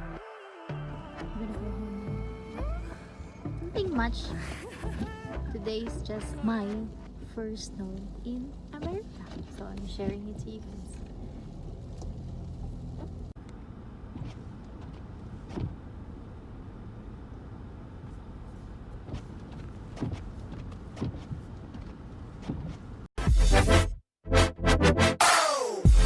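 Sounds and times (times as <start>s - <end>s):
car interior rumble: 0.9s - 23.1s
loud electronic music: 23.2s - 26.0s.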